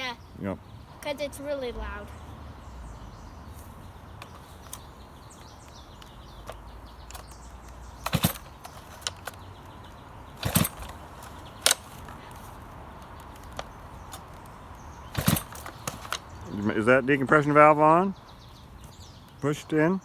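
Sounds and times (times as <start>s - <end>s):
engine turning over: 6.4s - 12.4s, 13.0s - 16.4s
chainsaw starter cord pulled: 6.4s - 16.3s.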